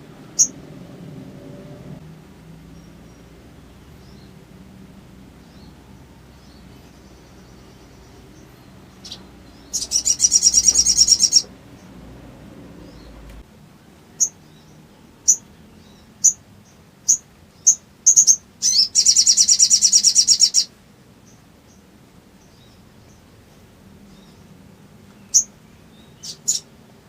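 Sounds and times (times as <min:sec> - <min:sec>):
bird trilling: 0:00.4 - 0:00.6, 0:08.4 - 0:11.9, 0:17.1 - 0:20.7.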